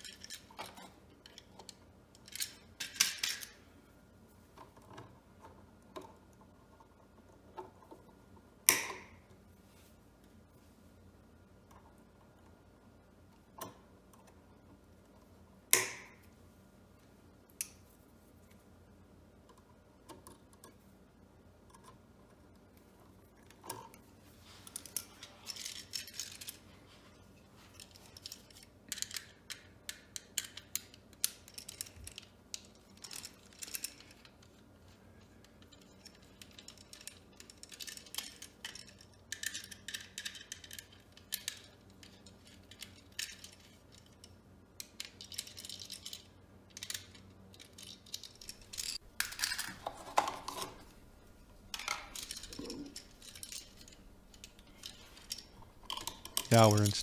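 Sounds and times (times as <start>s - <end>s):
hand tools and wires clicking: 8.7s - 9.2s, 15.7s - 16.2s, 46.8s - 57.0s
metallic clink: 48.4s - 57.0s.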